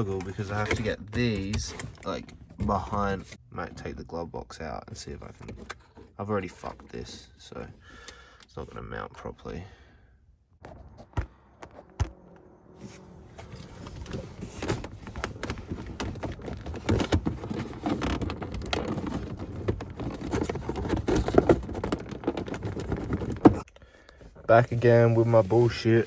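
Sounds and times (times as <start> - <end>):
plastic trim rustling and scraping: 0.0 - 3.9, 5.0 - 7.7, 12.8 - 23.7.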